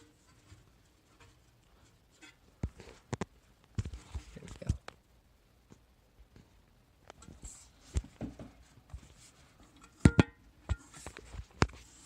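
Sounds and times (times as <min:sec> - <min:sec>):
handling knocks and rustles: 0:07.1 - 0:12.0.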